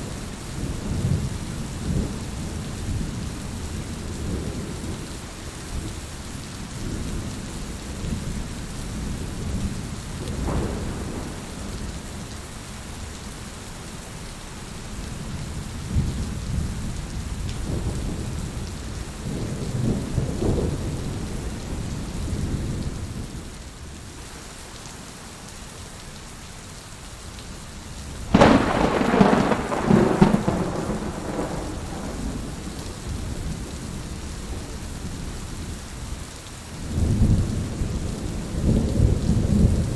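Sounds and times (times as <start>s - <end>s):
steady rain: 0.0s - 39.9s
thunder rumbling: 10.3s - 12.2s, 28.3s - 34.7s
loud thunderclap: 10.4s - 12.0s, 28.3s - 33.4s.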